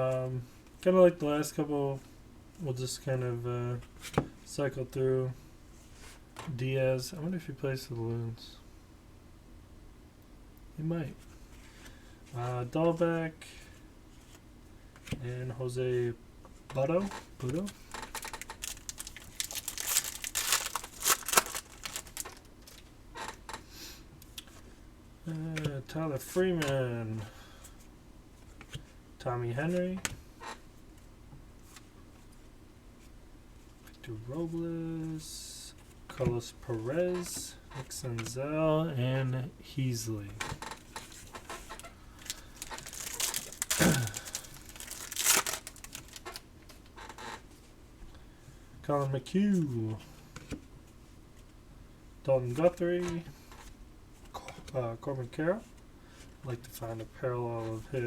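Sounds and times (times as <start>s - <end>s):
foil wrapper crinkling and tearing: 17.4s - 22.9s, 41.8s - 46.4s.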